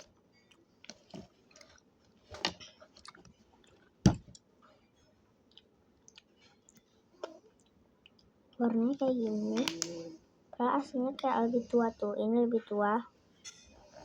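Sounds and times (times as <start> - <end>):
chewing: 0.0 - 4.0, 5.4 - 10.1
soft squishes: 0.0 - 10.1.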